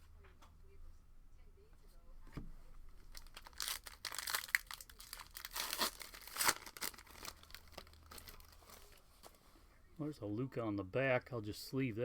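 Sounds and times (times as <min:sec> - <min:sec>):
wrapper tearing and crinkling: 0:03.0 - 0:09.0.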